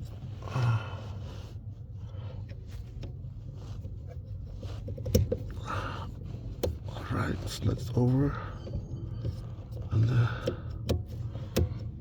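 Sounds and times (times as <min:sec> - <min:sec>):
low hum: 0:07.5 - 0:12.0.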